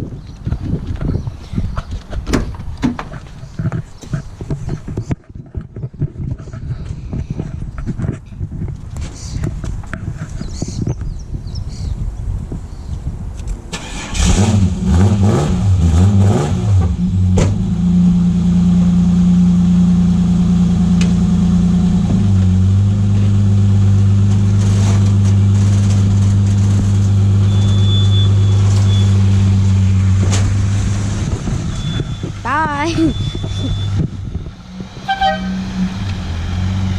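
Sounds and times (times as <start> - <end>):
car engine starting and revving: 13.7 - 32.4, 33.1 - 36.9.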